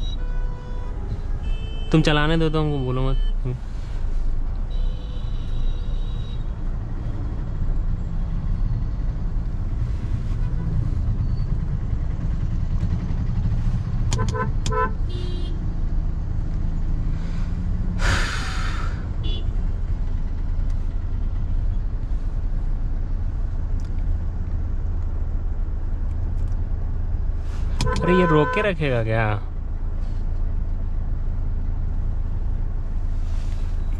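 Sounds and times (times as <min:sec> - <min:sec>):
car horn toots: 0:00.0 - 0:03.4, 0:04.7 - 0:06.5, 0:14.1 - 0:15.6, 0:19.2 - 0:19.6, 0:27.8 - 0:28.8
car road and engine rumble: 0:00.0 - 0:33.9.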